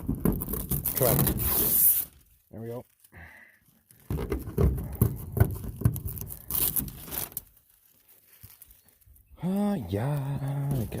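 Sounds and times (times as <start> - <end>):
plastic film peeling and tearing: 0.2 - 3.1, 5.7 - 11.0.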